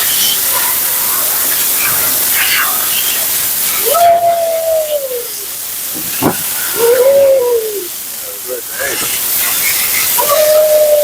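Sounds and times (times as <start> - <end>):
blow dryer hissing: 3.8 - 8.1
dog howling: 6.7 - 8.0.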